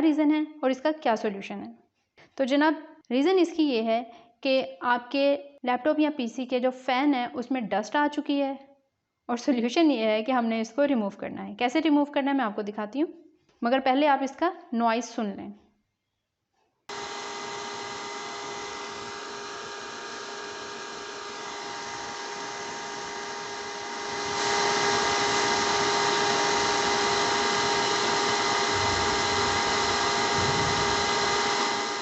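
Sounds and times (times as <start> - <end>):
laptop cooling fan whirring: 16.9 - 32.0.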